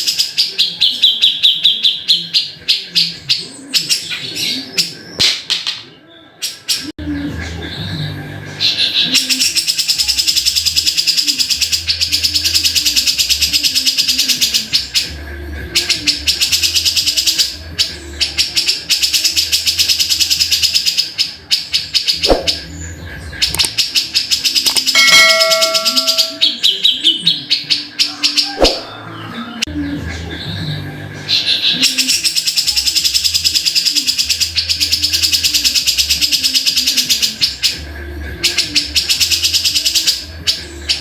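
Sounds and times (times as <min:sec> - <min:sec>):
bird chattering song: 0:00.0 - 0:05.3, 0:06.4 - 0:41.0.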